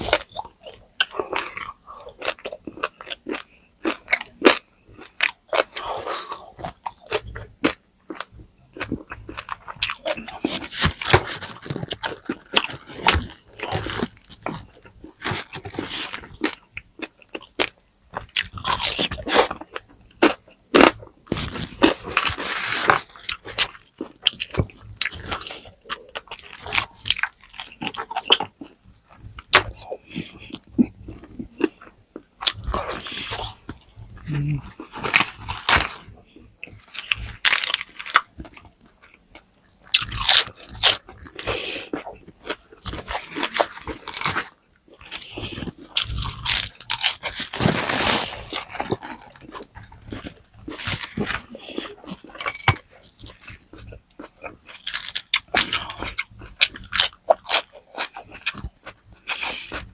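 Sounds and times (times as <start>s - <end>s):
wet chewing: 0.0s - 59.9s
crispy pork skin crunching: 32.4s - 36.2s, 36.8s - 38.8s, 42.0s - 59.9s.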